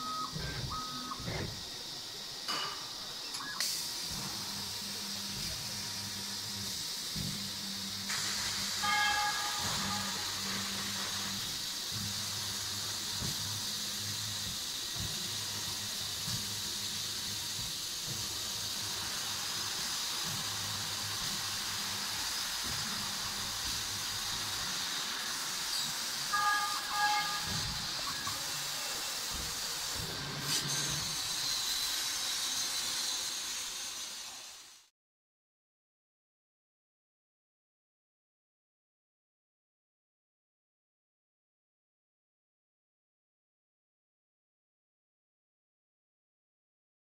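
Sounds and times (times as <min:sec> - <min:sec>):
laser cutter hissing: 0:00.0 - 0:34.9
short pitched tones: 0:26.3 - 0:28.4.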